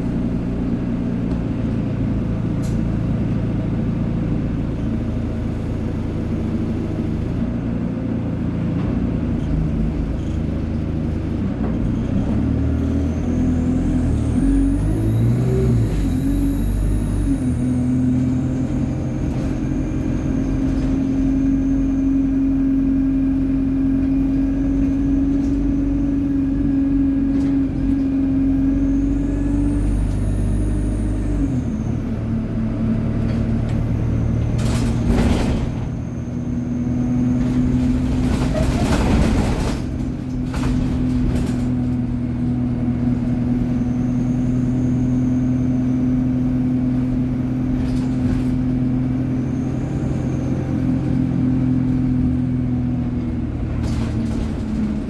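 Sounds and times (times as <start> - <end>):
bus engine drone: 0.0 - 55.0
faint turbo whines: 0.0 - 55.0
gearbox whine: 12.9 - 22.4.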